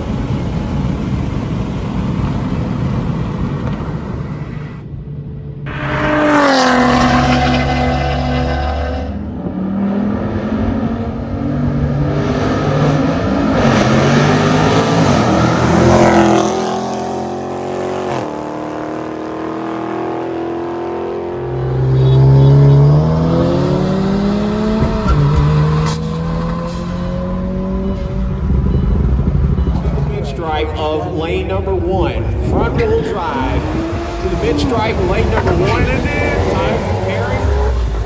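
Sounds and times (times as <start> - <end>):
car engine accelerating hard: 5.7 - 30.6, 32.6 - 38.0.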